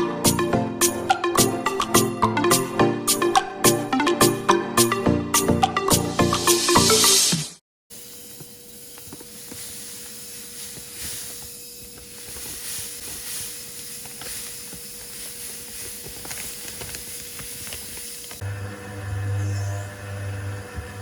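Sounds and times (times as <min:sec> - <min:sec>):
hiss: 0:06.3 - 0:18.4
machine motor hum: 0:08.0 - 0:21.0.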